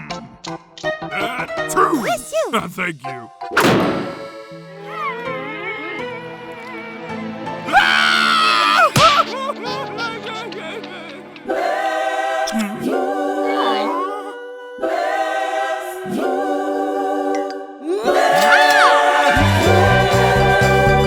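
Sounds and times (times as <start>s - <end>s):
high voice swooping: 1.2s - 3.0s, 13.4s - 14.3s
choir singing a cappella: 9.3s - 21.0s.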